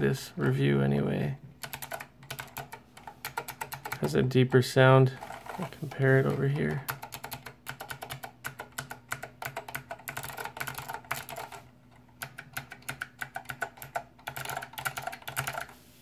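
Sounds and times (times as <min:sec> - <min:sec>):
clicky keyboard typing: 0:01.6 - 0:04.2, 0:06.9 - 0:15.7.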